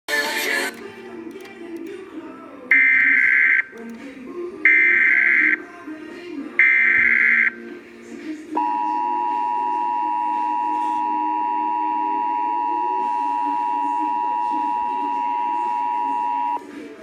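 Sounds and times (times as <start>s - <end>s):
two-tone attention signal: 8.6s - 16.6s.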